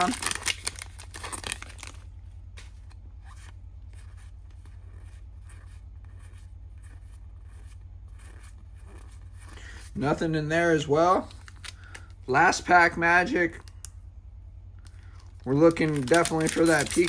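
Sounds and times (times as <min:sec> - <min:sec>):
foil wrapper crinkling: 0:00.0 - 0:02.8, 0:11.2 - 0:12.2, 0:14.9 - 0:17.0
cards rustling and sliding: 0:11.2 - 0:12.2, 0:15.6 - 0:17.0.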